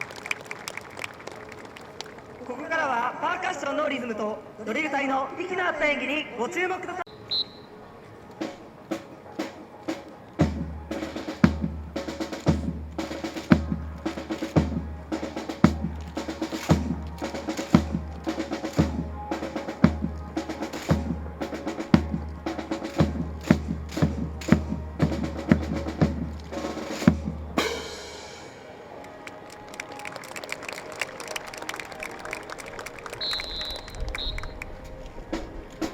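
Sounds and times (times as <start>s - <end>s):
snare drum hits and rolls: 9.4s - 28.1s, 30.0s - 35.9s.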